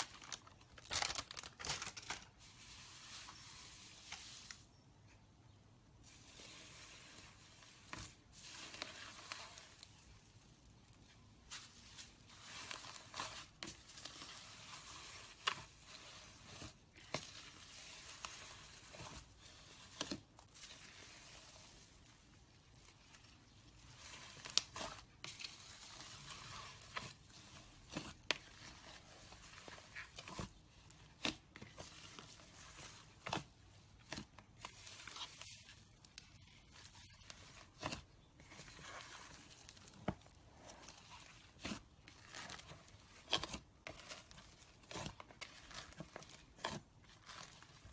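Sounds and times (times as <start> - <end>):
slime squishing with sticky pops: 22.6 - 47.9.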